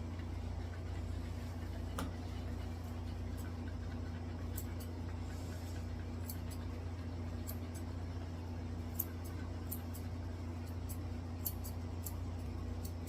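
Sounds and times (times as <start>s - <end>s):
electric clippers humming: 2.8s - 5.0s, 6.0s - 13.0s.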